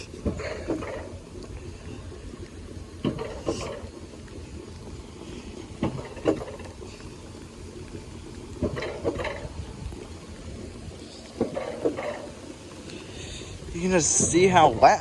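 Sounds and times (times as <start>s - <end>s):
sled rumbling on metal rail: 8.6s - 9.8s.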